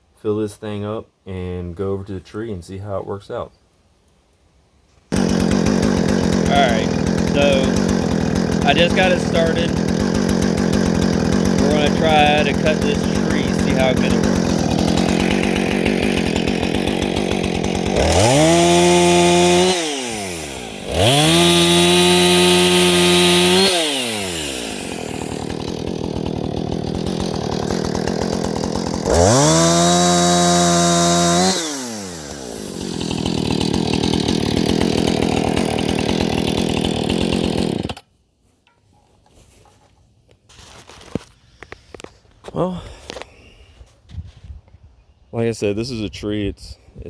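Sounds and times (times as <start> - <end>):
chainsaw idling and revving: 5.1 - 38.1.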